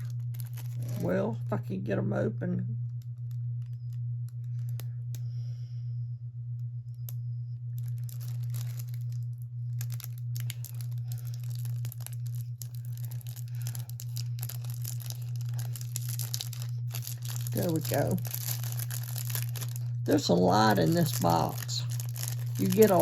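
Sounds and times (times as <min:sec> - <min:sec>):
packaging crinkling and tearing: 0:00.0 - 0:01.2, 0:07.8 - 0:23.0
low hum: 0:00.0 - 0:23.0.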